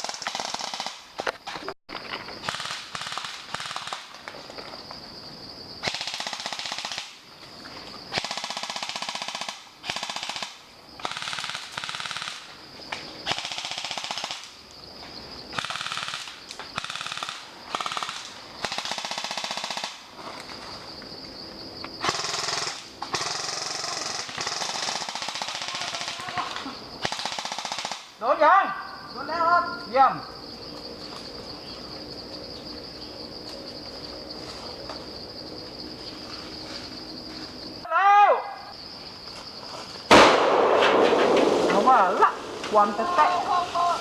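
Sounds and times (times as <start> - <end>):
airsoft guns firing bursts: 0.0 - 1.1, 2.4 - 4.2, 5.8 - 7.2, 8.1 - 12.4, 13.3 - 14.5, 15.6 - 20.0, 22.0 - 26.4, 27.0 - 28.1.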